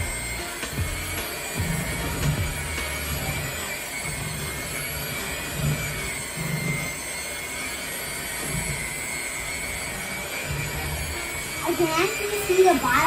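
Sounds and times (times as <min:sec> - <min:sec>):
electric mixer whining: 0:00.0 - 0:13.0.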